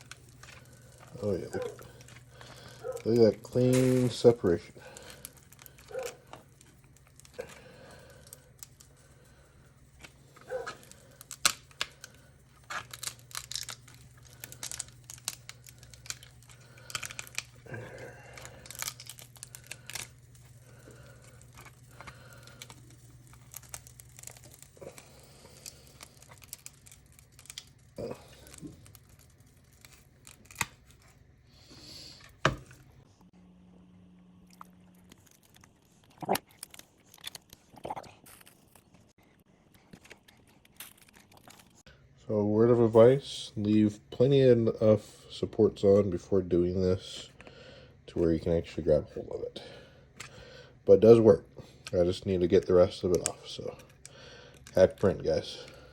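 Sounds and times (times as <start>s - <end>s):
plastic crackling and snapping: 0.0s - 31.3s, 34.4s - 39.1s, 39.7s - 41.9s, 51.6s - 55.9s
faint low hum: 0.0s - 55.9s.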